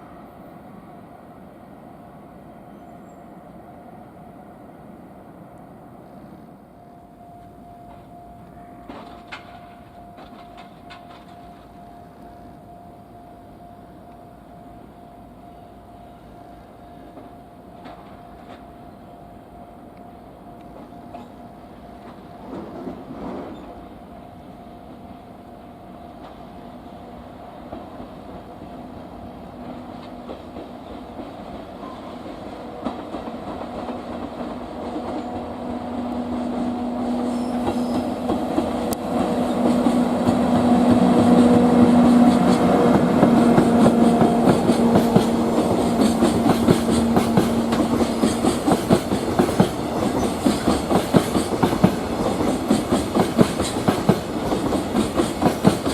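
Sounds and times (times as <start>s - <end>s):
locomotive hum: 0.0s - 55.9s
train wheels clacking on rails: 7.8s - 12.4s, 20.6s - 23.9s, 26.0s - 55.9s.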